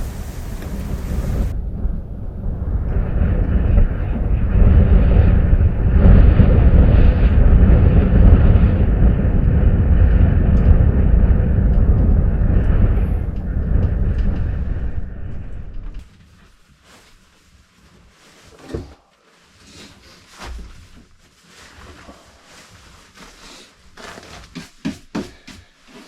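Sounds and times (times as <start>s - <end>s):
wind buffeting microphone: 0.0s - 16.1s.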